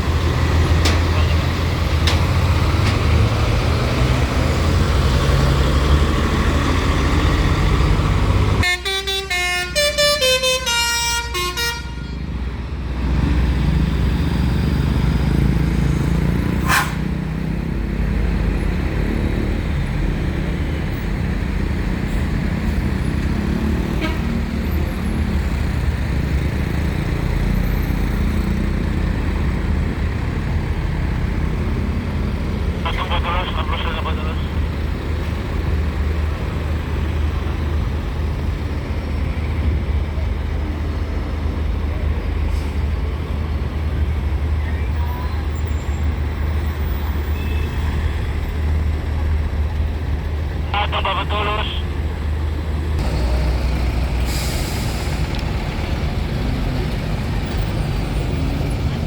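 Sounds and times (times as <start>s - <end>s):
heavy vehicle engines rumbling: 0.0s - 59.0s
musical vehicle horn: 8.6s - 12.3s, 24.0s - 24.4s.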